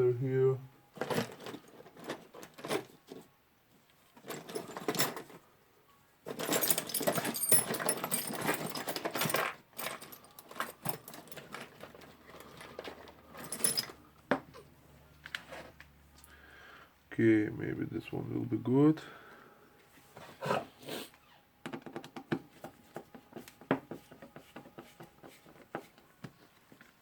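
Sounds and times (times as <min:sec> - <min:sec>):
small loose parts rattling: 0:01.0 - 0:03.3, 0:04.1 - 0:05.4, 0:06.3 - 0:14.3.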